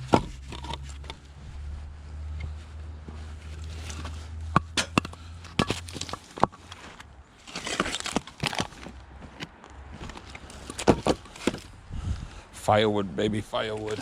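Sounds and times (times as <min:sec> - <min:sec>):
wooden logs knocking: 0:00.0 - 0:00.8, 0:10.0 - 0:11.7
rustling scrape: 0:00.0 - 0:11.8, 0:13.7 - 0:14.0.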